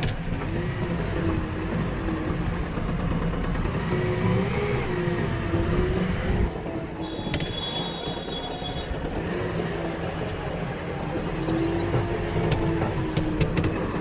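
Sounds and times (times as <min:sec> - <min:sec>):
diesel engines running: 0:00.0 - 0:14.0
high-pitched metallic squeal: 0:07.0 - 0:09.1.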